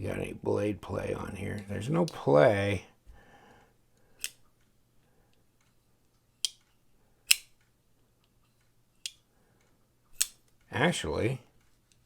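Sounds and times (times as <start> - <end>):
folding knife snapping open and shut: 7.3 - 7.6, 10.1 - 10.5.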